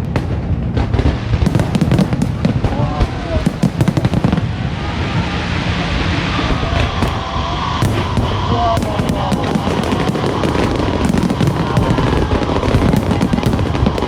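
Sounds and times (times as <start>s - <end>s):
fireworks bangs and crackles: 0.0s - 14.0s
fireworks deep booms: 0.0s - 14.0s.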